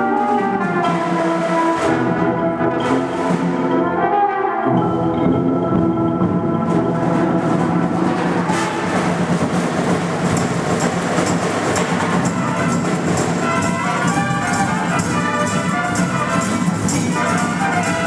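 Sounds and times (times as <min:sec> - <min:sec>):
brass holding chords: 0:00.0 - 0:09.5, 0:11.7 - 0:18.0
drum hits: 0:04.7 - 0:18.0.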